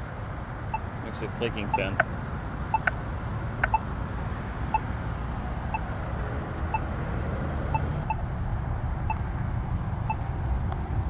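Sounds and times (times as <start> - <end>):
steady traffic noise: 0.0 - 11.0
pedestrian signal clicking ticks: 0.7 - 4.0, 4.6 - 7.0, 7.7 - 8.2.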